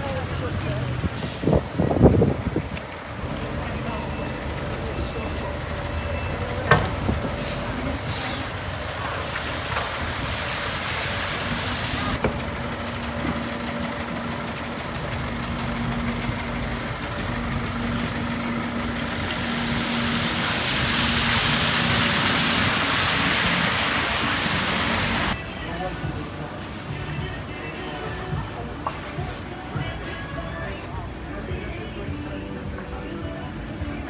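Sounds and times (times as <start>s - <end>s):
city street traffic: 0.0s - 34.0s
heavy vehicle engine humming: 0.0s - 34.0s
rushing noise: 3.2s - 25.5s.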